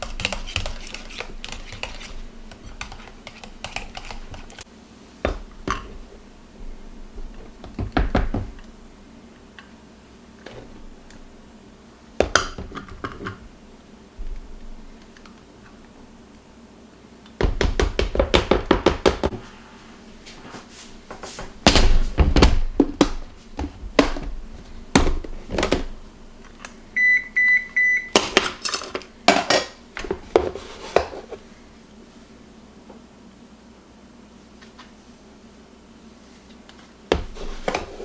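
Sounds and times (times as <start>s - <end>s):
electronic appliance beep: 27.0s - 28.2s.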